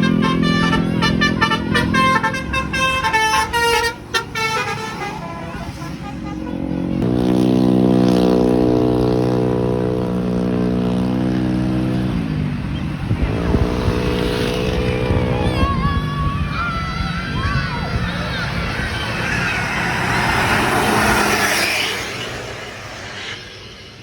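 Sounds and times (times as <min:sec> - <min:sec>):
bus musical horn playing notes: 0:00.0 - 0:07.4.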